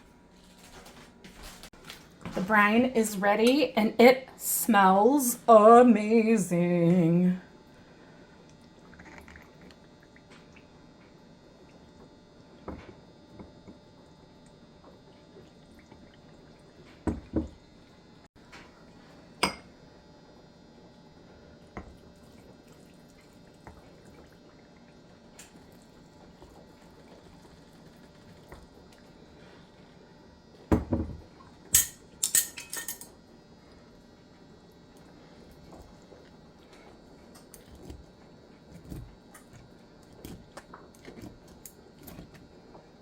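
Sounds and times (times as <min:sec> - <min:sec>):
utensils clinking on glass jars: 0:31.8 - 0:33.1.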